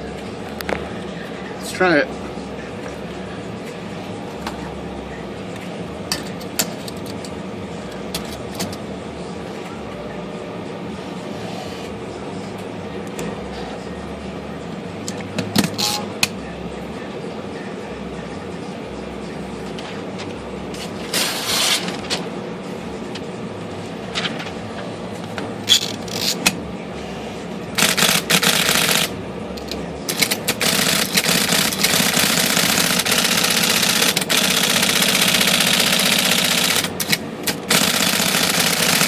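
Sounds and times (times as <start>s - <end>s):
typewriter mechanical clatter: 27.8s - 29.1s, 30.1s - 39.0s
typewriter motor humming: 27.8s - 39.0s
typewriter clicks: 30.1s - 39.0s.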